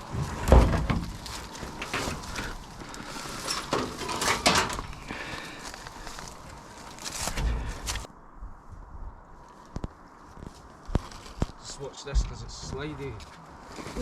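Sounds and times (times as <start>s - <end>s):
footsteps on debris and steel: 0.0s - 8.1s.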